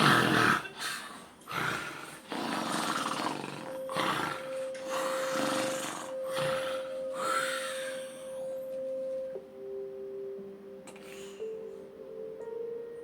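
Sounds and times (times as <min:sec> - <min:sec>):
loud harsh snoring: 0:00.0 - 0:08.1.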